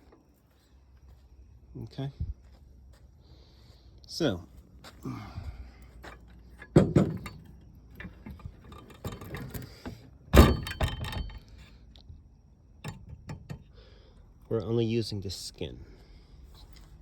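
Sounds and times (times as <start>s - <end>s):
metal panels knocking and clinking: 6.6s - 11.5s, 12.8s - 13.7s.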